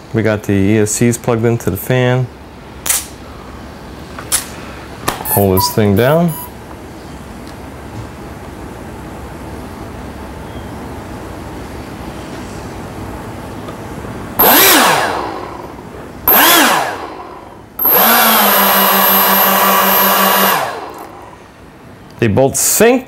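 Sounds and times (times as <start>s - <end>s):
electric ducted fans whining: 0.0s - 23.0s.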